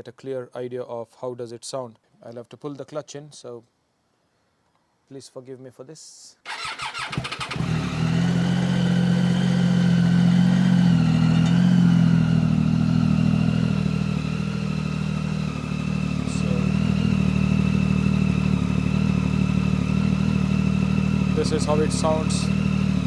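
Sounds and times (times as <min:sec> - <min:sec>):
motorcycle engine idling: 0:06.5 - 0:23.0.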